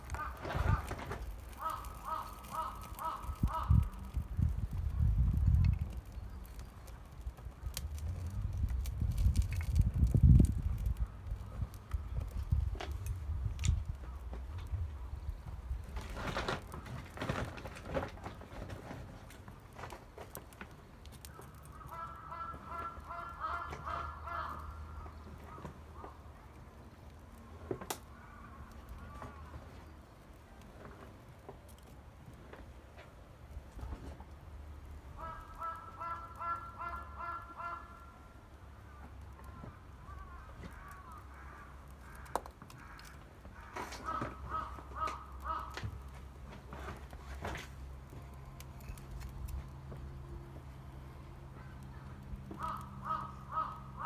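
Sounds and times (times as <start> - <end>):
sharp cracks: 0.0 - 14.4
crow cawing: 0.1 - 4.2, 21.2 - 26.2, 28.1 - 29.5, 35.2 - 46.2, 51.6 - 54.0
goose-like honking bird calls: 0.2 - 3.8, 21.8 - 25.0, 35.2 - 38.2, 43.6 - 45.8, 52.6 - 54.0.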